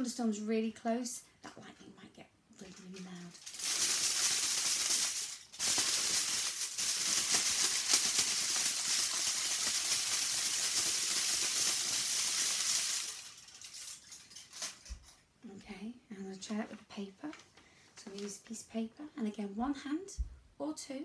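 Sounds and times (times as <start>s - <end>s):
tin foil crackling: 2.6s - 15.2s.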